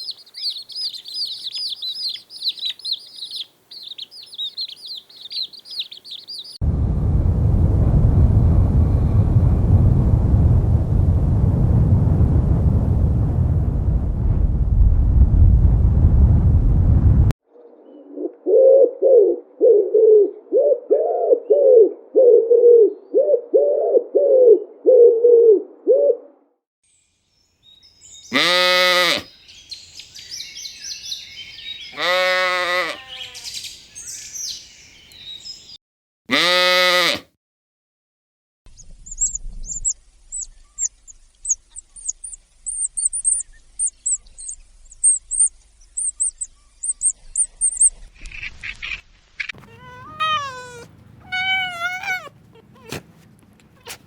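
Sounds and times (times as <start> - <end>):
high-pitched bird chirping: 0.0 - 6.6, 38.8 - 49.0, 49.6 - 52.3
drawn-out bleats: 28.3 - 29.3, 31.9 - 33.5, 36.3 - 37.2, 49.6 - 53.0
short low animal calls: 48.6 - 53.0.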